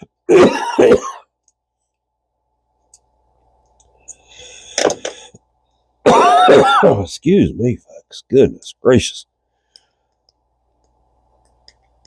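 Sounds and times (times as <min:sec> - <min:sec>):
person coughing: 0:00.0 - 0:01.3, 0:06.0 - 0:07.1.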